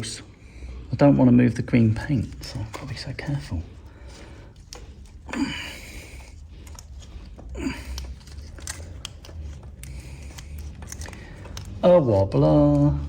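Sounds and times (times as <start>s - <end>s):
clicks and rubbing of hand work: 1.7s - 13.0s
person exhaling with strain: 5.2s - 6.4s, 7.4s - 8.4s.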